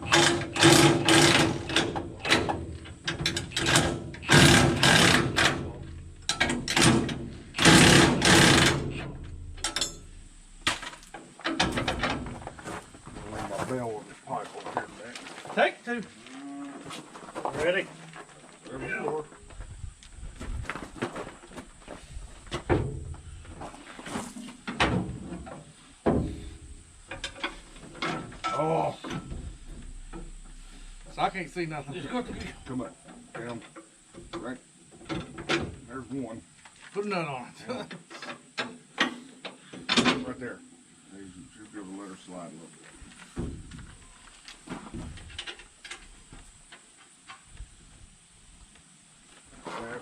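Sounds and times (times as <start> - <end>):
power wrench rattling bursts: 0.0 - 12.2
heavy steel parts clunking: 0.0 - 13.0, 22.5 - 34.4.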